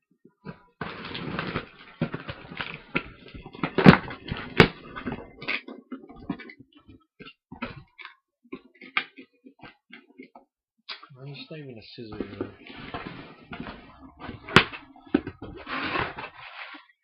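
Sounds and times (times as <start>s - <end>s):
cardboard tearing and scraping: 0.5s - 6.5s, 12.2s - 17.0s
sharp cardboard cracks: 0.5s - 6.6s.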